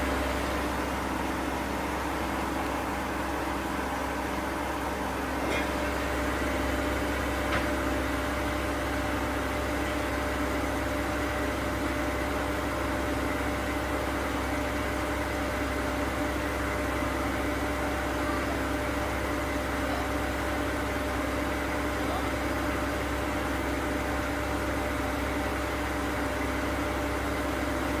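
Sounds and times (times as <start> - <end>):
washing machine spinning: 0.0 - 28.0.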